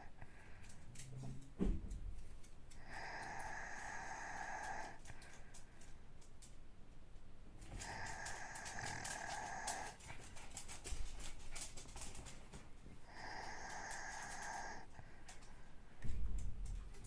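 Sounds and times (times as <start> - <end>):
person snoring: 2.8 - 5.0, 7.8 - 10.0, 13.1 - 14.9
faint clicks: 7.6 - 12.5, 13.1 - 15.6.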